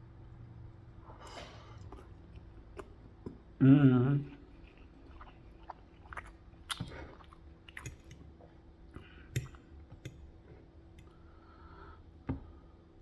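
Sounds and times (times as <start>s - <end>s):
wet chewing mouth clicks: 1.8s - 3.0s, 4.4s - 8.2s.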